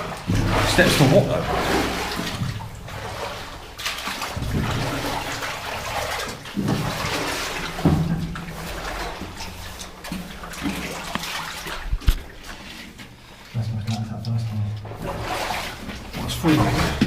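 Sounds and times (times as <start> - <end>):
water splashing and sloshing: 0.0 - 17.0.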